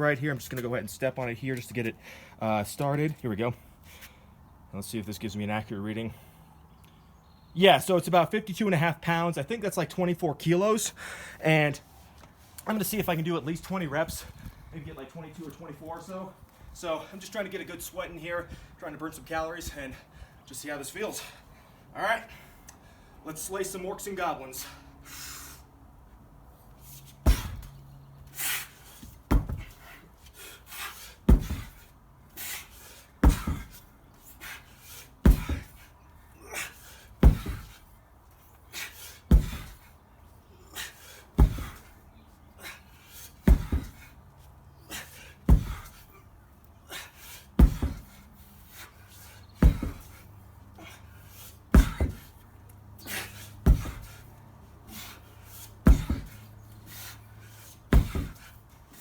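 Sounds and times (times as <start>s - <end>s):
person panting heavily: 10.9s - 11.4s, 53.0s - 58.6s
sledgehammer thud: 27.3s - 27.7s, 29.3s - 29.7s, 31.3s - 31.8s, 33.2s - 33.8s, 35.3s - 35.8s, 37.2s - 37.8s, 39.3s - 39.8s, 41.4s - 41.9s, 43.4s - 44.1s, 45.5s - 46.0s, 47.6s - 48.2s, 49.6s - 50.2s, 51.7s - 52.3s, 53.1s - 54.2s, 55.8s - 56.4s, 57.9s - 58.5s.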